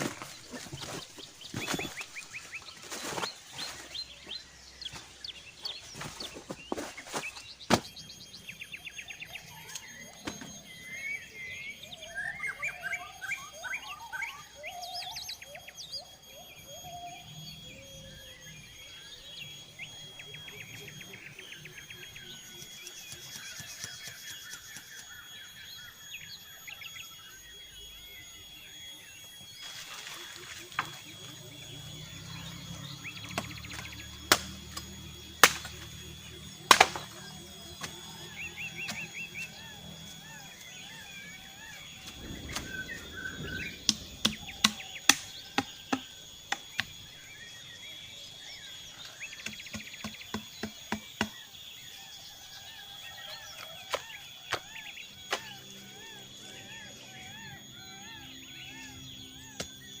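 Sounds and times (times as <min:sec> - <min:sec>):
high insect whine: 0:00.0 - 1:00.0
warbling animal calls: 0:09.2 - 0:47.7, 0:51.8 - 1:00.0.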